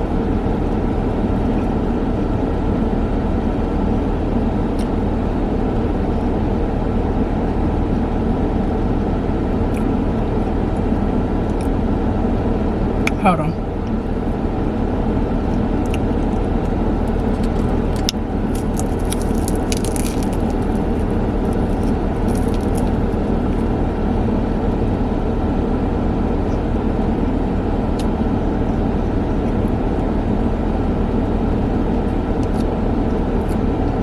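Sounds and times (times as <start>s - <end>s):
ventilation fan running: 0.0s - 34.0s
car engine idling: 2.9s - 34.0s
crinkling clicks: 17.0s - 23.6s.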